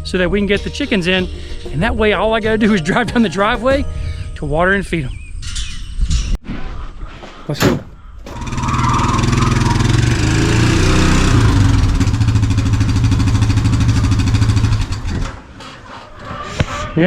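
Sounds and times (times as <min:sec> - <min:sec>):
farm vehicle engine running: 0:08.3 - 0:15.6.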